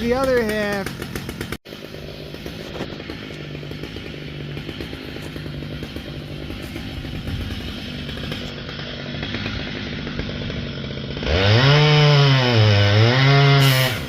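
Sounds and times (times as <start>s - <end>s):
chainsaw revving: 0.0s - 14.0s.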